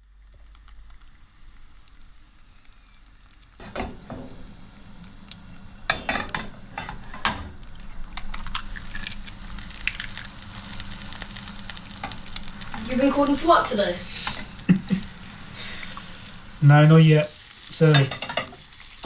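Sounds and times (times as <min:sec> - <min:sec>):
food sizzling in a frying pan: 0:00.0 - 0:19.0.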